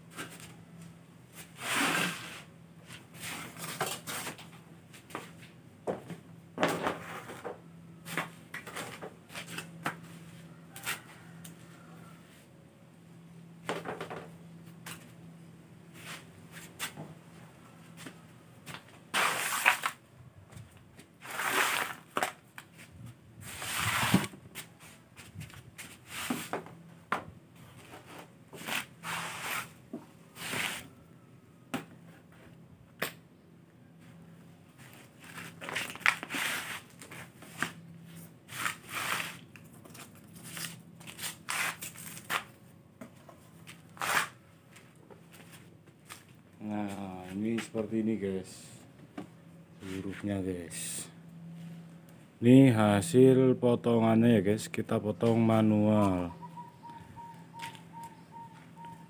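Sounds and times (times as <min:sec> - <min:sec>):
faint steady hum: 0:02.4 - 0:59.0
scraping and crackling handling noise: 0:34.8 - 0:46.5.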